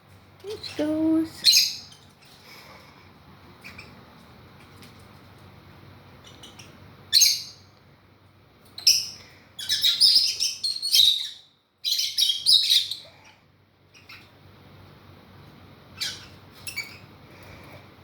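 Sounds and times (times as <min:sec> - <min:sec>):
parrots chirping and squawking: 0:01.3 - 0:02.4, 0:03.5 - 0:04.0, 0:06.2 - 0:07.7, 0:08.8 - 0:14.5, 0:15.9 - 0:17.2.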